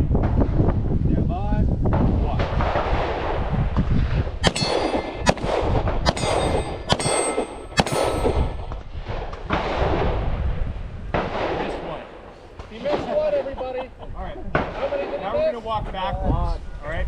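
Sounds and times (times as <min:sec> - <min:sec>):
metallic ringing: 0:04.4 - 0:05.4, 0:06.1 - 0:08.7
pistol shots: 0:04.4 - 0:10.2.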